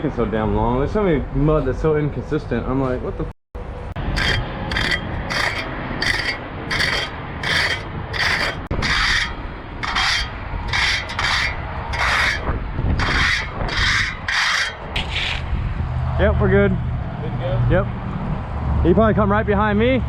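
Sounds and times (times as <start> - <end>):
tool scraping wet concrete: 4.0 - 15.5.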